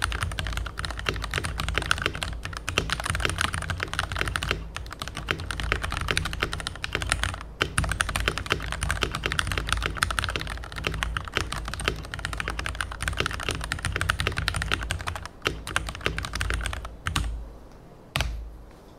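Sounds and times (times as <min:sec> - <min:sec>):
mechanical keyboard typing: 0:00.0 - 0:17.4.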